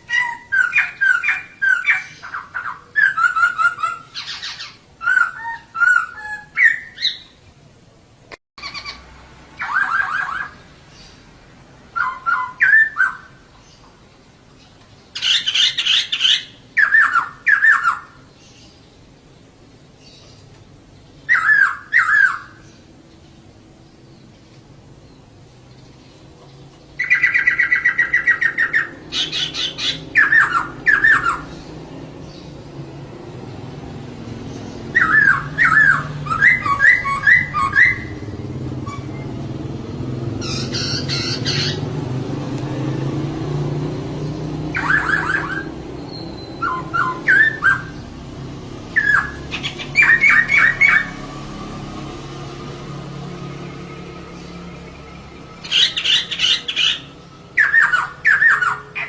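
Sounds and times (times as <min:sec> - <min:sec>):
bird chattering calls: 0:00.0 - 0:07.4, 0:08.6 - 0:11.2, 0:15.1 - 0:18.7, 0:21.2 - 0:22.7, 0:27.0 - 0:31.8, 0:34.7 - 0:39.2, 0:40.4 - 0:41.9, 0:44.7 - 0:48.1, 0:48.9 - 0:51.2, 0:55.6 - 0:59.0.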